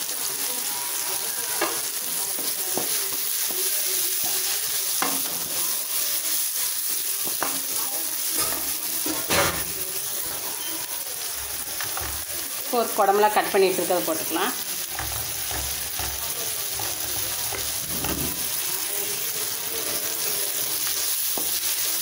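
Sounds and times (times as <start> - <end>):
vegetables sizzling in oil: 0.0 - 22.0
spoon knocking and scraping pan: 7.2 - 9.8, 11.4 - 12.4, 14.8 - 18.6, 20.8 - 21.8.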